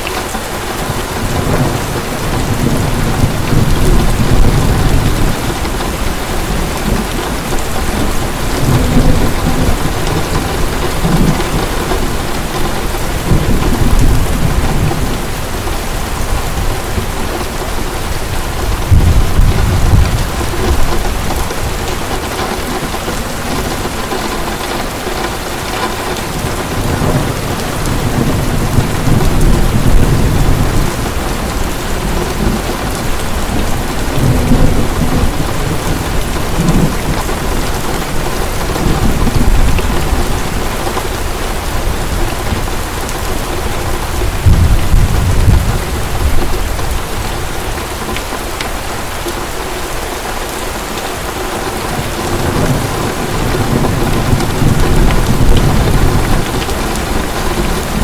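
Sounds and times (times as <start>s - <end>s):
heavy rain pouring: 0.0s - 58.0s
thunder rumbling: 0.6s - 48.5s, 51.6s - 58.0s.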